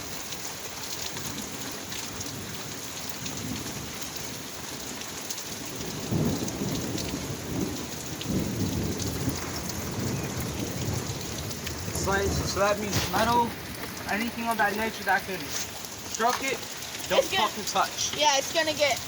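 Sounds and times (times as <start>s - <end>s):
rain falling: 0.0s - 19.0s
thunder rumbling: 5.5s - 19.0s.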